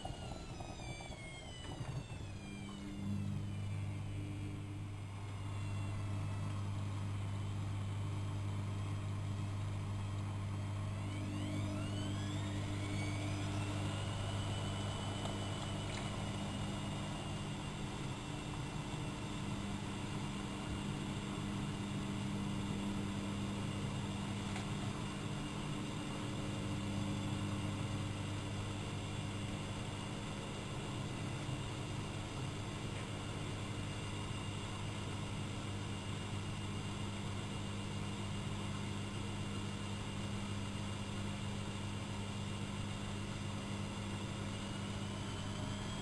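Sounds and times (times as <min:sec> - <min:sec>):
motor whine: 0:00.0 - 0:46.0
washing machine humming: 0:00.0 - 0:46.0.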